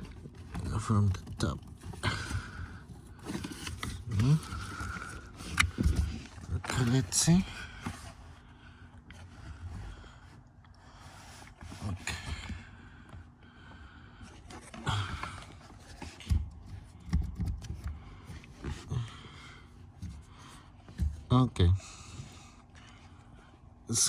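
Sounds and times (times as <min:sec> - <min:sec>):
knocks and clicks of car parts: 0:16.0 - 0:18.8.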